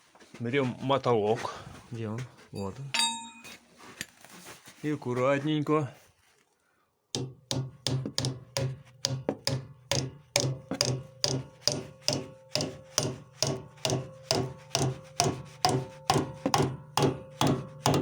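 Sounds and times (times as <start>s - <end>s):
hammer tapping on metal: 3.0s - 3.6s, 7.2s - 18.0s.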